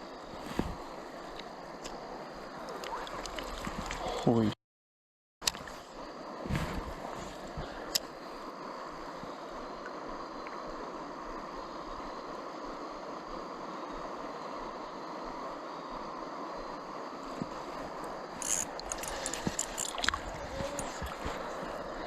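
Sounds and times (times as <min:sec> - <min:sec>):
sharp water splashes: 0:19.6 - 0:20.4.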